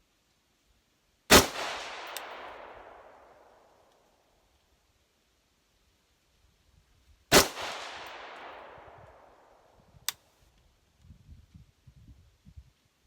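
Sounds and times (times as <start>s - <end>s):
rifle shot with echo: 1.3s - 3.7s, 7.3s - 9.7s
sharp click: 2.1s - 2.3s.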